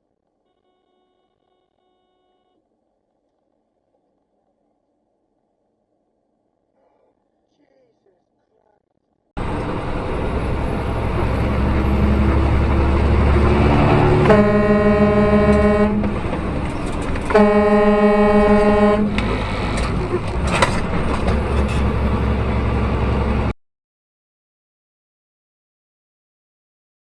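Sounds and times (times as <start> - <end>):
vehicle horn blasts: 0.5 - 2.6, 13.0 - 19.8
road and engine noise: 9.4 - 23.6.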